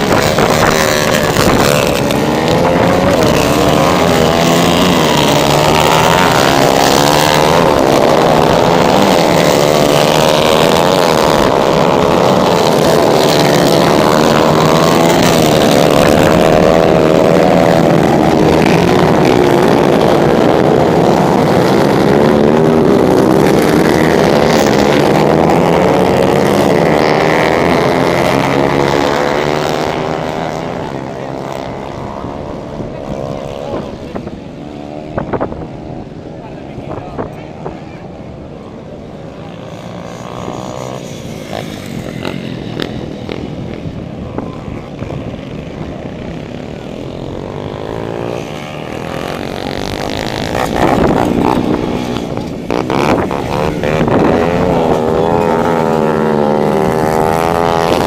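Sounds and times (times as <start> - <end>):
racing motorcycles revving: 0.0 - 58.0.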